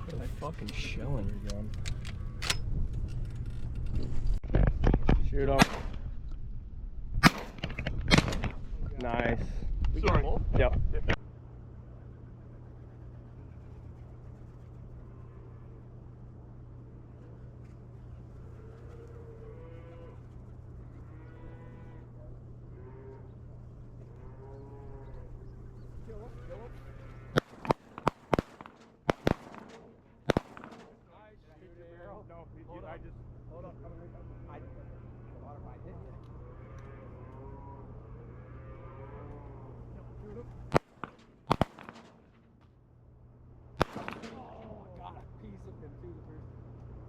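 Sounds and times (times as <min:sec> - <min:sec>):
low background hum: 0:00.0 - 0:47.0
shotgun shots: 0:05.5 - 0:06.0, 0:07.2 - 0:08.5, 0:27.4 - 0:31.1, 0:40.7 - 0:42.5, 0:43.8 - 0:44.8
distant cattle mooing: 0:11.9 - 0:28.7, 0:33.4 - 0:40.9
faint gunshot report: 0:43.8 - 0:44.7.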